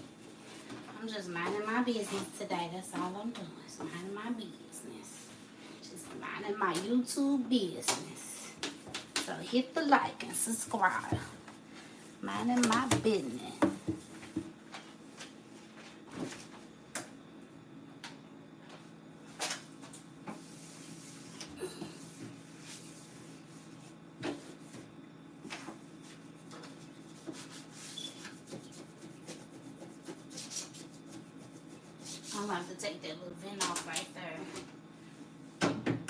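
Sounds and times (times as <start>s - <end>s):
wiping and rubbing on surfaces: 10.3s - 14.5s, 22.0s - 24.9s, 25.5s - 32.8s.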